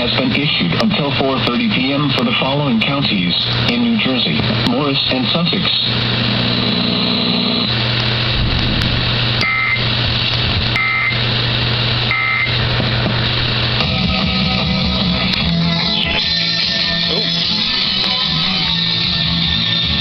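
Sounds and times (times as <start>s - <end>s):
steady low hum: 0.0s - 19.5s
harsh two-tone data bursts: 9.4s - 10.0s, 10.7s - 11.3s, 12.0s - 12.6s
guitar music: 12.0s - 20.0s.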